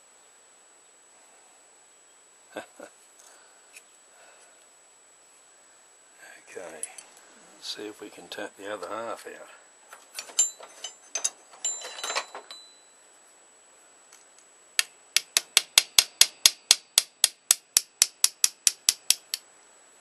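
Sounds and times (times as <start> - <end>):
metal parts clinking: 9.9 - 12.8
hammer tapping metal rivet: 15.2 - 19.4.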